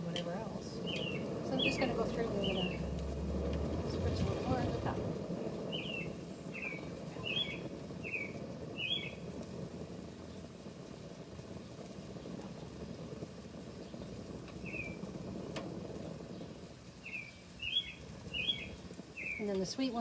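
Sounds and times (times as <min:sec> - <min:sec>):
low outdoor rumble: 0:00.0 - 0:20.0
small bird chirping: 0:00.7 - 0:02.9, 0:05.6 - 0:09.3, 0:13.7 - 0:15.0, 0:16.2 - 0:20.0.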